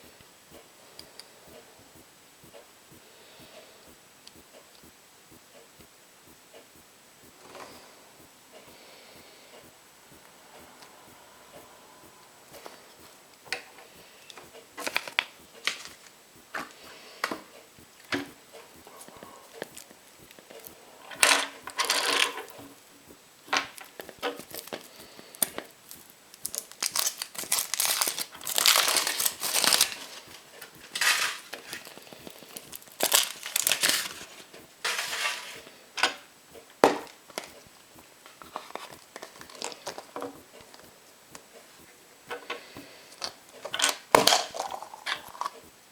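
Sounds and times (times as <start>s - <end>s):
wrapper crinkling and tearing: 25.5s - 30.2s, 30.9s - 35.4s, 39.2s - 40.0s.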